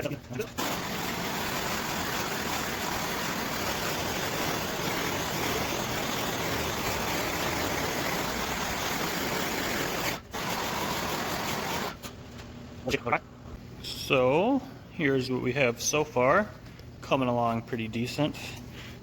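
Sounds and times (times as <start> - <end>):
gas torch hissing: 0.6 - 12.0.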